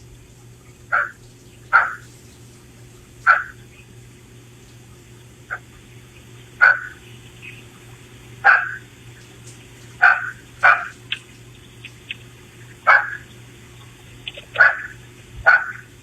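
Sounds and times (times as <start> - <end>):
dog barking: 0.9 - 2.0, 3.3 - 3.6, 6.6 - 7.0, 8.4 - 8.8, 10.0 - 11.0, 12.8 - 13.2, 14.6 - 15.9.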